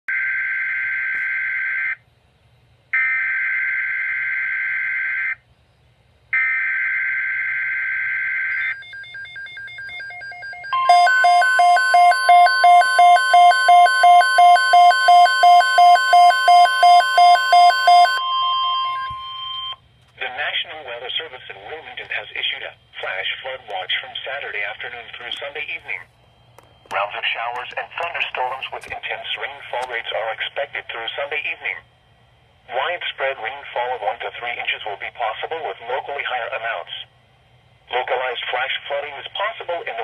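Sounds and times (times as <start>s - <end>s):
rapid pulsing beeps: 8.4s - 19.8s
steady alert tone: 8.7s - 19.8s
faint beeps: 10.8s - 19.8s.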